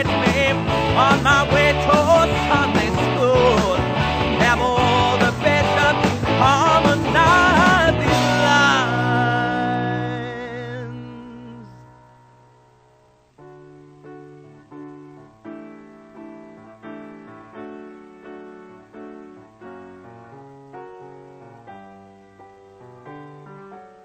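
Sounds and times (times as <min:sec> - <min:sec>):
rock band chord: 0:00.0 - 0:10.1
solo piano chords: 0:00.0 - 0:24.0.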